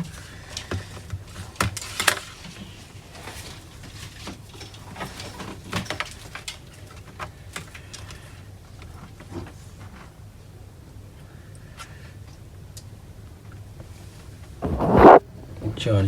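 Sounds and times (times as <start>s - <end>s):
steady low hum: 12.6s - 16.0s.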